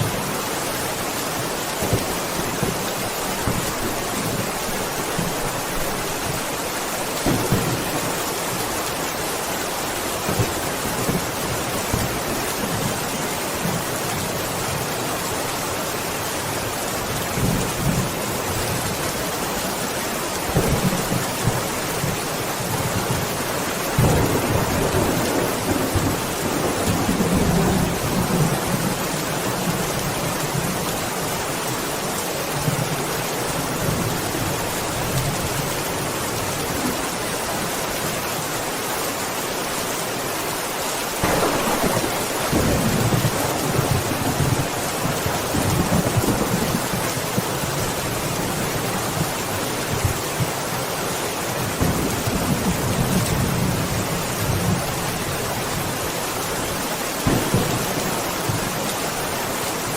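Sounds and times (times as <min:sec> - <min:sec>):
steady rain: 0:00.0 - 0:59.9
thunder rumbling: 0:07.2 - 0:09.2, 0:24.0 - 0:29.1, 0:41.2 - 0:48.4, 0:57.2 - 0:59.1.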